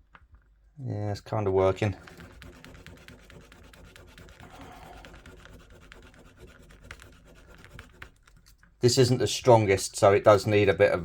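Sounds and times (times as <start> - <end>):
file scratching hard plastic: 1.7 - 8.8.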